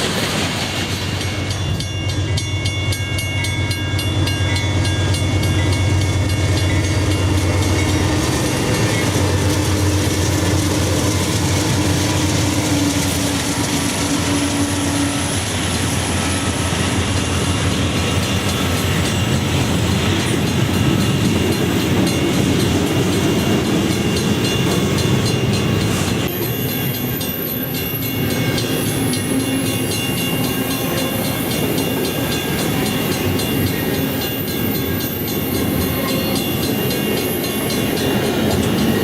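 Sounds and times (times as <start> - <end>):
train wheels rumbling on rail: 0.0 - 39.0.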